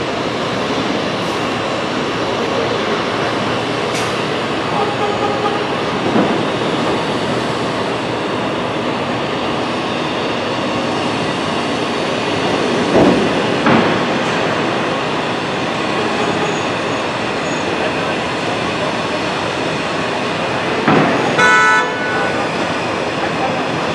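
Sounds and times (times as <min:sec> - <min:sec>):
loud rumbling rattle: 0:00.0 - 0:21.4.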